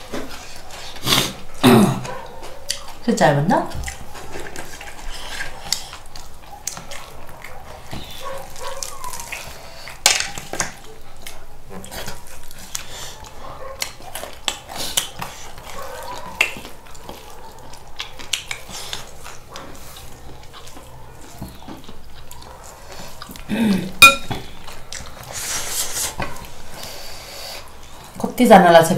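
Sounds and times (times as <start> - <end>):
wet chewing clicks and smacks: 2.0 - 3.0, 3.7 - 23.5, 24.3 - 25.4
cutlery and dishes clattering: 24.0 - 24.5.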